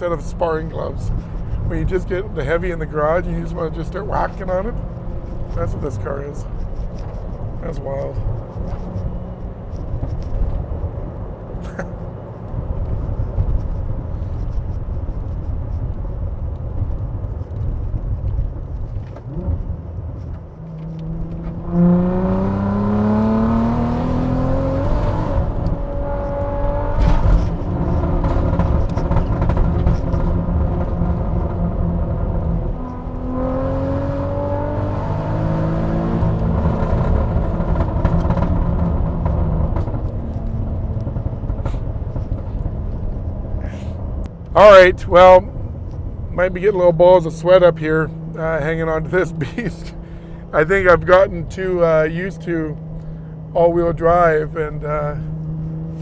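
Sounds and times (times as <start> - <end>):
car engine accelerating: 0.0 - 56.0.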